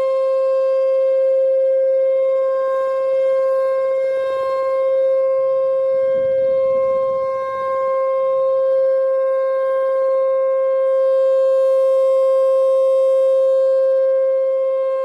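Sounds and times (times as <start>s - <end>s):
warning siren steady tone: 0.0s - 15.0s
wind gust on microphone: 5.9s - 8.0s.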